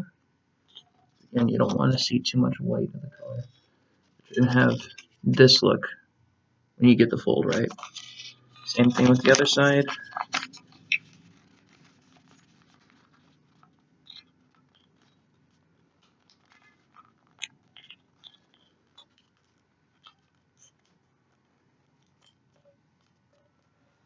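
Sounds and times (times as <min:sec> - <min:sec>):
paper being folded and creased: 0:07.4 - 0:20.9.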